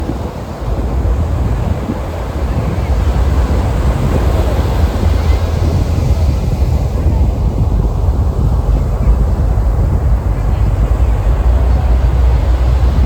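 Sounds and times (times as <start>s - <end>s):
ocean waves breaking: 0.0s - 13.0s
wind buffeting microphone: 0.0s - 13.0s.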